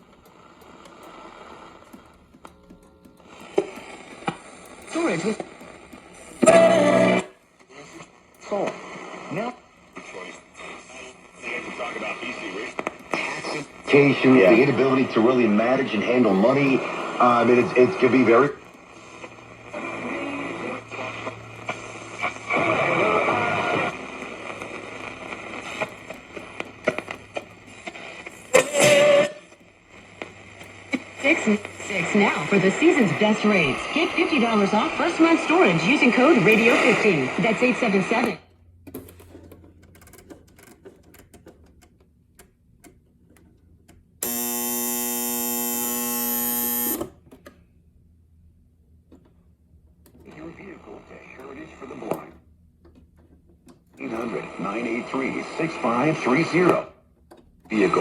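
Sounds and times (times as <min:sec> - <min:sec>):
radio static hissing and crackling: 0:00.0 - 0:02.1, 0:03.3 - 0:38.3
faint clicks and crackle: 0:00.0 - 0:06.5
alarm buzzer: 0:44.2 - 0:47.1.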